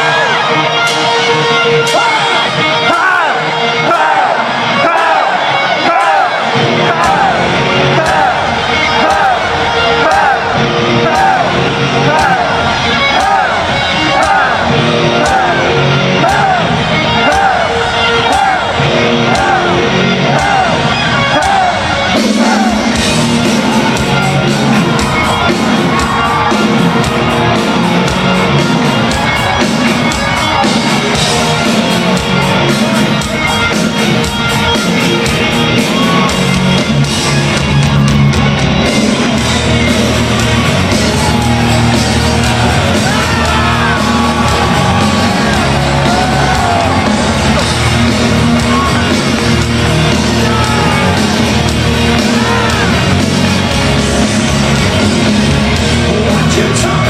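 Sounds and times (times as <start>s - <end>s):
crowd shouting and singing along: 0.0s - 57.0s
heavy metal band playing live: 0.0s - 57.0s.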